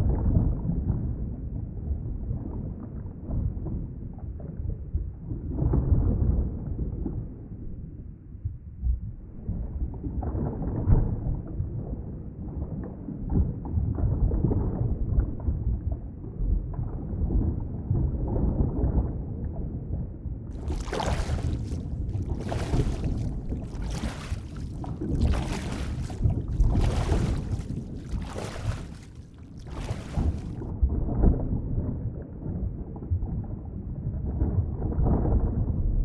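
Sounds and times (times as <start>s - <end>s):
water sloshing: 20.5s - 30.7s
muffled underwater rumbling: 20.6s - 30.7s.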